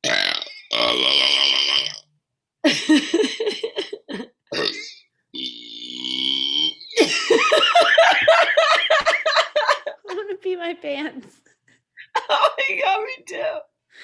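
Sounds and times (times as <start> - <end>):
woman burping: 0.0 - 2.0, 2.9 - 7.2.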